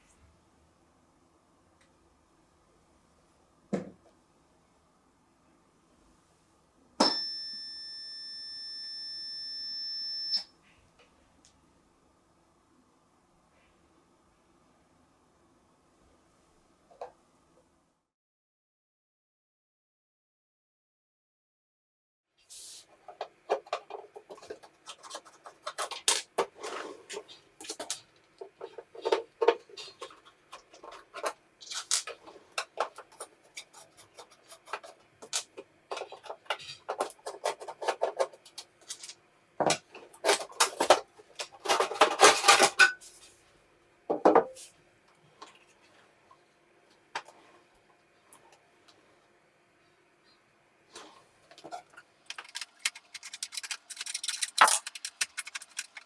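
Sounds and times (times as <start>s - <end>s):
clicks and knocks on metal parts: 52.3s - 56.0s
metal clatter: 52.3s - 56.0s.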